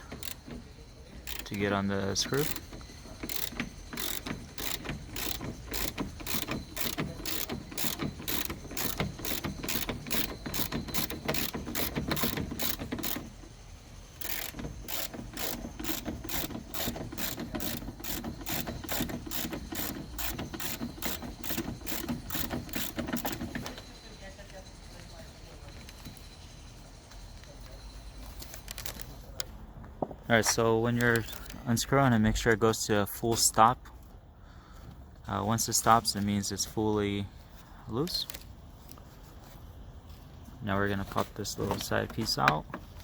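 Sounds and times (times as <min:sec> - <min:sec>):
ratchet clicking: 0:00.0 - 0:24.0.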